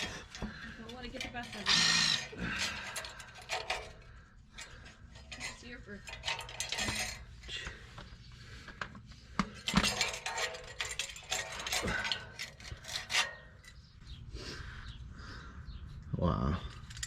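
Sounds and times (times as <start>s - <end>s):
metal tools clinking: 0.0s - 7.7s, 9.5s - 13.9s, 16.6s - 17.0s.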